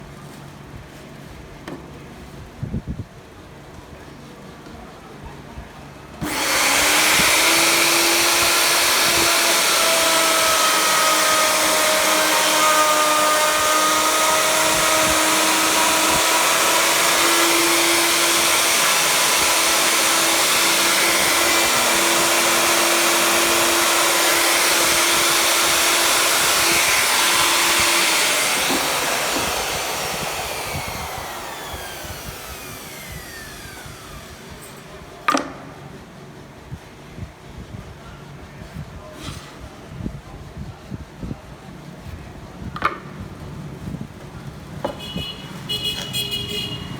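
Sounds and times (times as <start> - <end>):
electric router motor whining: 6.2 - 34.9.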